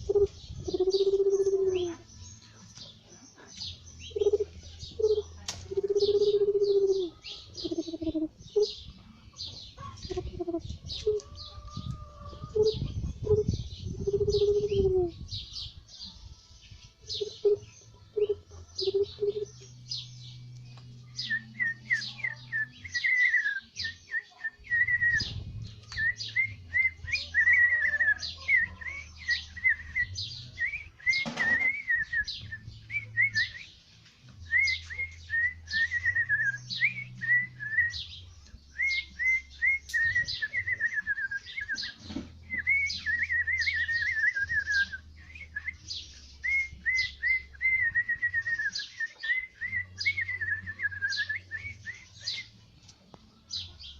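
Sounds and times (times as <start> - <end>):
whistled bird chirps: 21.2 - 33.8, 38.8 - 52.5.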